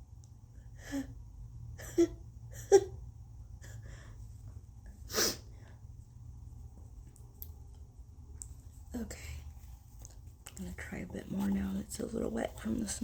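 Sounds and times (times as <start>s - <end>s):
sniffs through congested nose: 5.0s - 5.6s.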